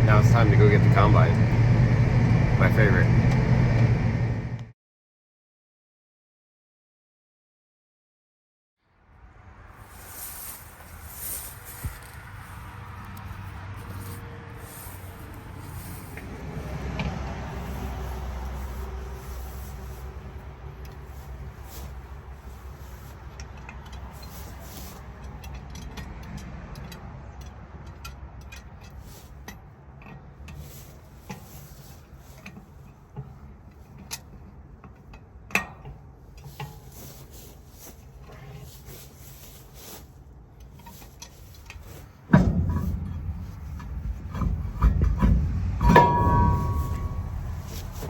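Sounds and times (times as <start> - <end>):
loud low rattling rumble: 0.0 - 4.7, 9.2 - 25.1, 41.8 - 48.0
vehicle engine humming: 0.0 - 4.7, 9.0 - 48.0
light clicks and rattles: 17.0 - 40.0.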